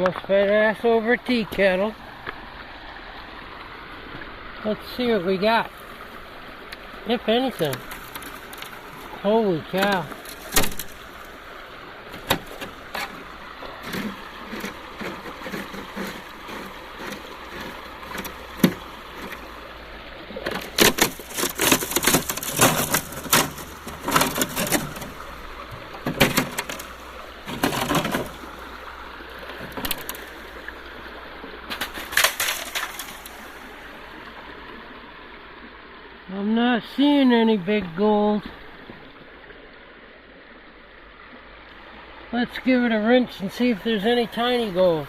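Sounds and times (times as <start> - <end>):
river running: 0.0 - 45.0
stones and gravel clattering: 7.4 - 9.1, 9.7 - 11.1, 12.1 - 19.5, 20.4 - 28.6, 29.5 - 30.4, 31.7 - 33.6.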